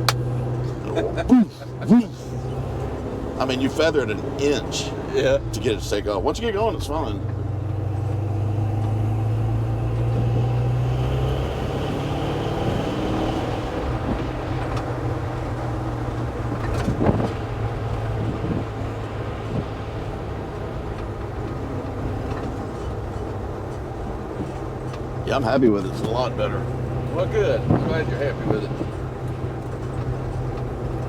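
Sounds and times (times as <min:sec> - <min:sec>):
car engine running: 0:00.0 - 0:31.0
road noise: 0:00.0 - 0:31.0.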